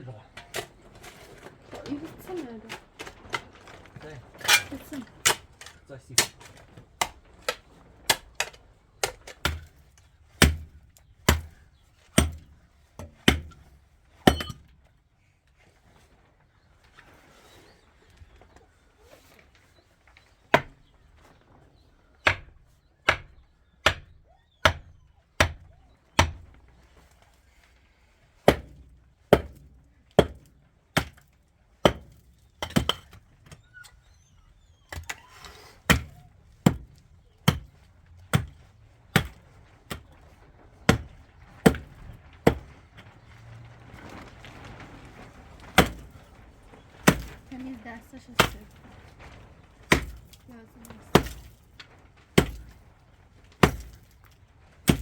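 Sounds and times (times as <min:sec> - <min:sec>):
hand tool striking hard material: 0:00.4 - 0:14.7, 0:22.2 - 0:26.4, 0:28.4 - 0:33.6, 0:35.9 - 0:40.2, 0:40.8 - 0:42.8, 0:45.7 - 0:46.3, 0:47.0 - 0:47.6, 0:48.4 - 0:48.8, 0:49.8 - 0:52.8, 0:53.5 - 0:55.0.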